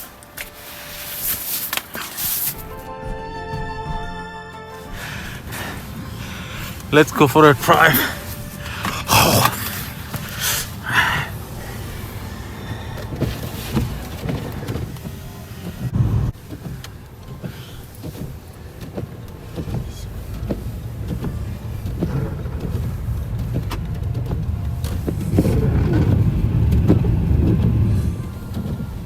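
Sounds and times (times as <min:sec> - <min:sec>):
car road and engine rumble: 0:04.8 - 0:29.0
small knocks: 0:05.2 - 0:29.0.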